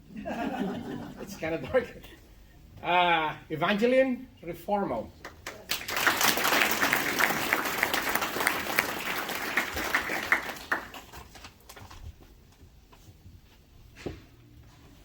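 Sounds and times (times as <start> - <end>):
audience applauding: 5.3 - 11.8.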